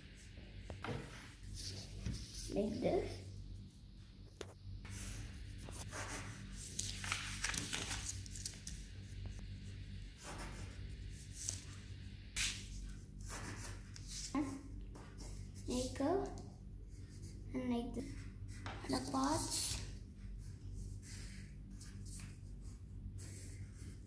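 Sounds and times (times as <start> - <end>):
steady low hum: 0.0 - 24.0
pencil scratching on paper: 4.9 - 6.8, 10.2 - 16.0, 16.9 - 24.0.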